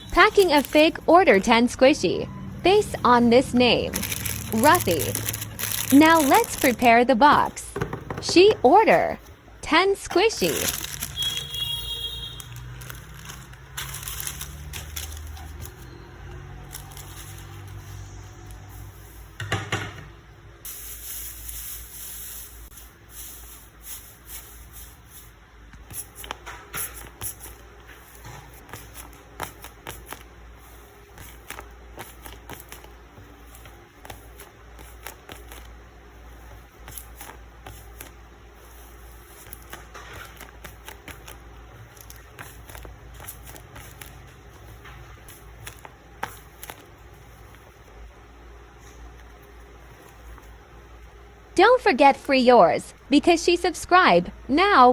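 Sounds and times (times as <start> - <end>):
paper rustling: 0.0 - 1.6, 2.7 - 7.6, 10.2 - 19.1, 25.9 - 47.9.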